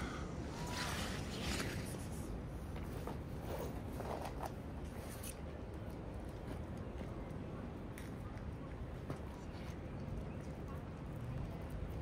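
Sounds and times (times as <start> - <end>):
rustling scraping swishes: 0.0 - 2.4.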